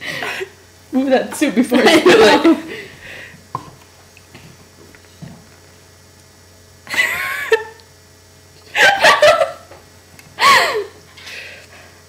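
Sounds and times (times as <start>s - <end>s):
high-pitched laughter and gasping: 10.4s - 11.0s.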